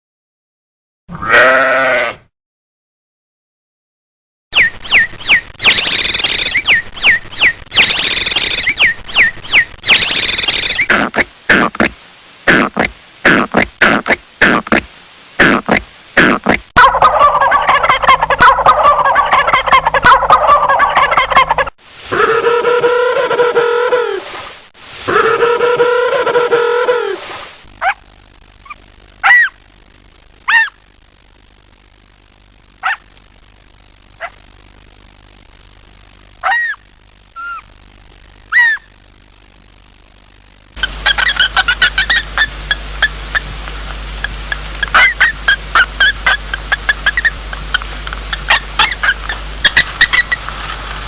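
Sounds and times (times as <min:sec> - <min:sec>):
animal high-pitched calls: 0:01.1 - 0:02.2, 0:16.8 - 0:24.2, 0:28.6 - 0:29.6, 0:30.5 - 0:30.8, 0:36.4 - 0:36.8, 0:38.5 - 0:38.9, 0:44.2 - 0:50.4
short loud animal calls: 0:01.1 - 0:02.3
turkey gobbling: 0:16.8 - 0:21.7, 0:40.8 - 0:43.5, 0:44.2 - 0:50.5
held pitched call: 0:40.8 - 0:50.5.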